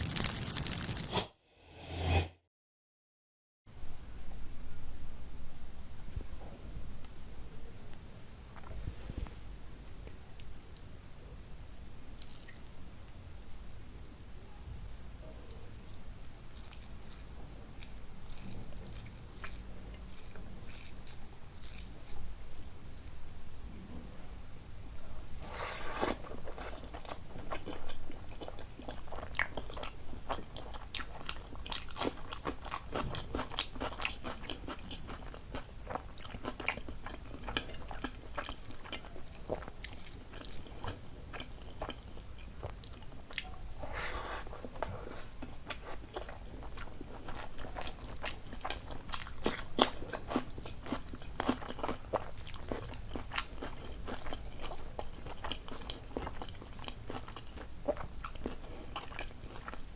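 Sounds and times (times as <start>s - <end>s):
person chewing crunchy food: 15.8s - 23.2s, 25.4s - 59.9s.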